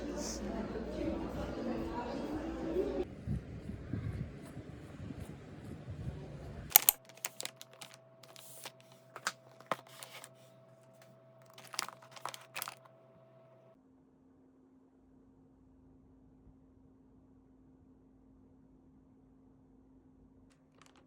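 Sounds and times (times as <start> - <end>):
sharp clicks: 6.7 - 9.8
short rustles: 6.7 - 10.4, 11.5 - 12.8.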